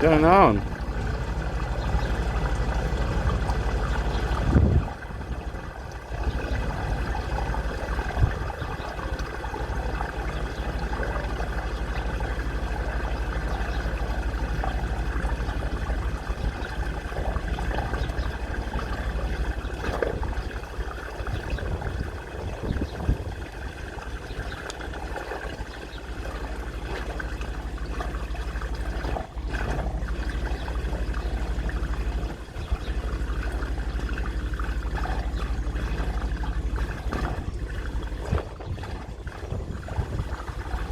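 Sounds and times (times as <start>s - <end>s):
steady low hum: 0.0s - 40.9s
water jet rushing through drain: 0.0s - 40.9s.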